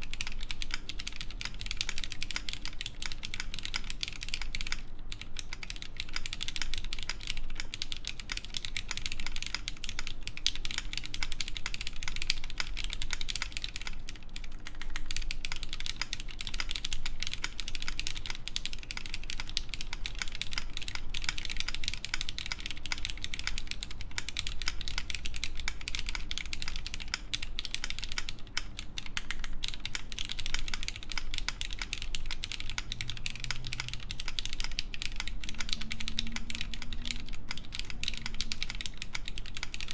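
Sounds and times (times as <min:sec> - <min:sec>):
mechanical keyboard keys clacking: 0:00.0 - 0:39.9.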